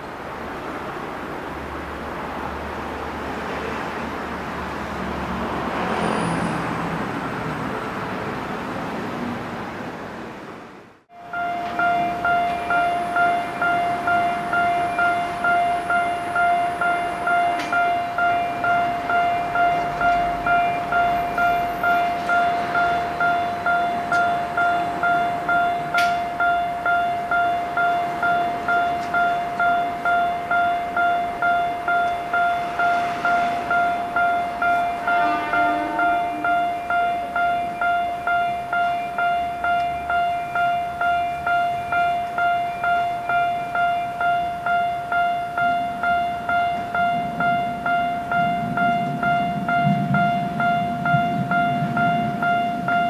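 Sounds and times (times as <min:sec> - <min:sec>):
street traffic noise: 0:00.0 - 0:53.0
level crossing warning bell ringing: 0:11.1 - 0:53.0.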